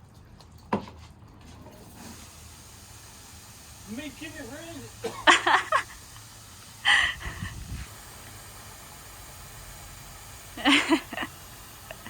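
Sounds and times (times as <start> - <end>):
garden hose spraying water: 0.6 - 12.0.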